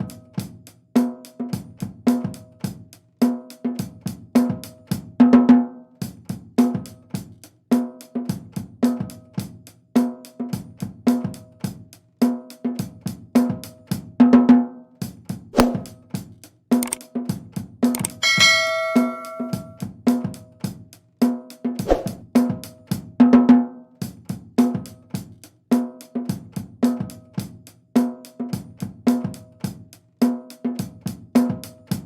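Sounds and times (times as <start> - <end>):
drum kit beat: 15.1 - 23.2, 24.0 - 32.0
cymbal crash: 18.2 - 19.8.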